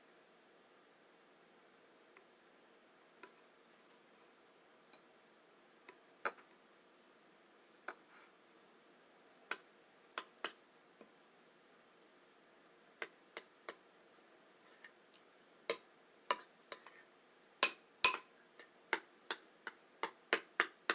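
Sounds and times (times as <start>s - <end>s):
spoon clicking on bowl: 15.7s - 16.9s, 17.6s - 18.3s.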